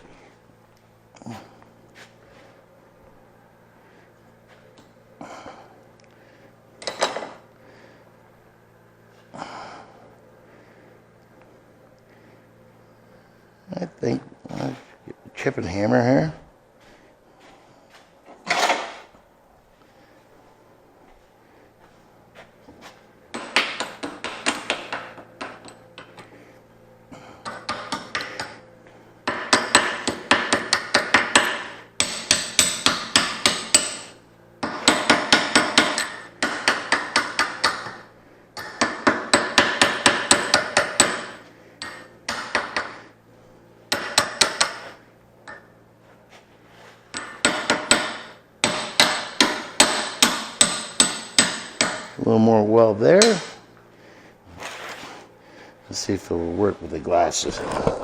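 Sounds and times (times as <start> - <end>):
faint low hum: 0.0 - 39.3
chipping hammer tapping metal: 29.2 - 38.0, 47.1 - 52.2.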